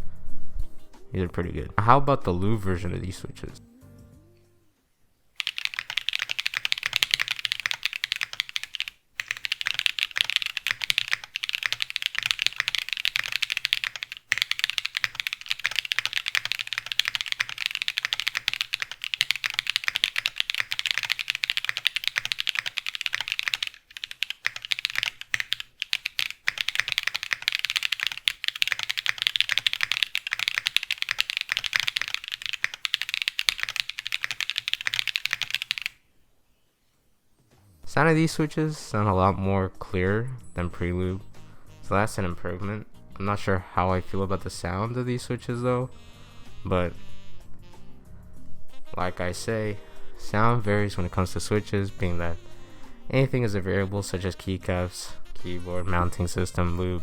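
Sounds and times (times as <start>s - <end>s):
fast mechanical keyboard typing: 5.4s - 36.0s.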